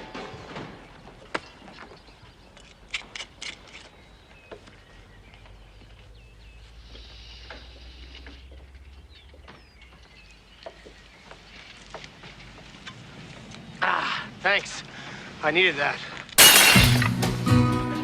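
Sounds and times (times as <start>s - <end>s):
faint bird chirps: 1.4s - 11.7s.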